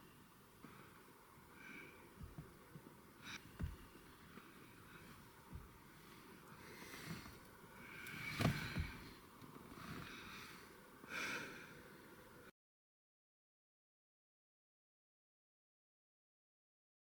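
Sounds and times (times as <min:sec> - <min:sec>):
close breathing and sniffing: 0:03.2 - 0:12.2.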